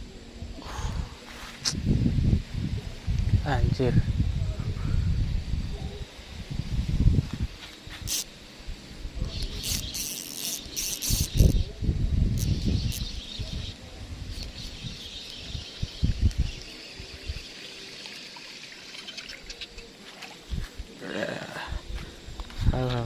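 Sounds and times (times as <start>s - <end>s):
high insect buzz: 0.0s - 23.0s.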